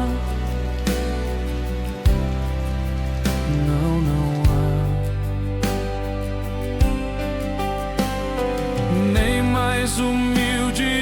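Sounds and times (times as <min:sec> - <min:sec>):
instrumental hymn accompaniment: 0:00.0 - 0:11.0.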